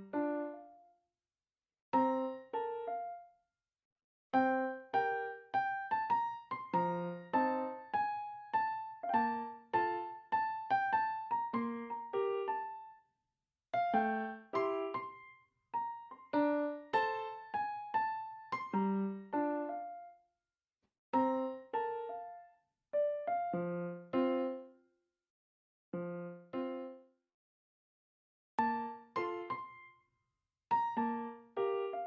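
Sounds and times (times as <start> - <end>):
gentle piano melody: 0.0 - 0.9, 2.0 - 3.3, 4.4 - 13.0, 13.8 - 20.2, 21.2 - 24.8, 26.0 - 27.0, 28.6 - 30.0, 30.7 - 32.0.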